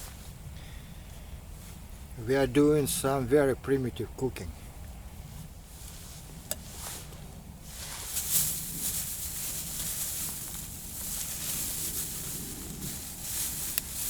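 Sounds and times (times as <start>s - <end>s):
rustling handling noises: 5.2s - 14.0s.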